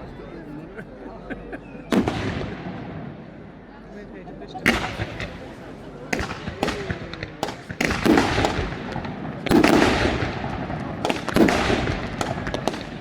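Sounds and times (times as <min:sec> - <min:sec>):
sharp firework cracks: 0:01.9 - 0:02.6, 0:04.7 - 0:05.5, 0:06.1 - 0:13.0
crackling firework tails: 0:01.9 - 0:03.6, 0:04.6 - 0:13.0.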